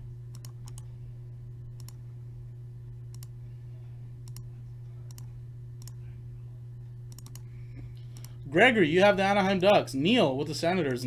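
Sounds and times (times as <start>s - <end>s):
steady low hum: 0.0s - 11.0s
computer mouse clicking: 0.3s - 0.9s, 1.8s - 2.0s, 3.1s - 3.3s, 4.2s - 4.5s, 5.1s - 6.0s, 7.1s - 7.5s, 8.1s - 8.4s.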